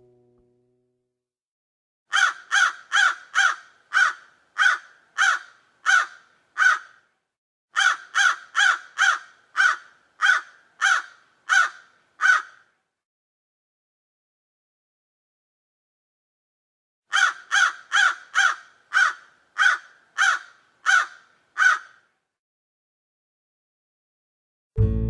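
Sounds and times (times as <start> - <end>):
crow cawing: 2.1 - 7.1, 7.8 - 12.8, 17.1 - 22.1.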